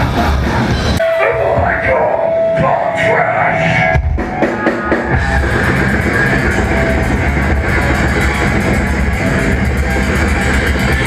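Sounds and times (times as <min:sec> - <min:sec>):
drum kit: 0:00.0 - 0:02.6, 0:03.8 - 0:11.0
distorted guitars: 0:00.0 - 0:11.0
extreme metal band playing loud: 0:00.0 - 0:11.0.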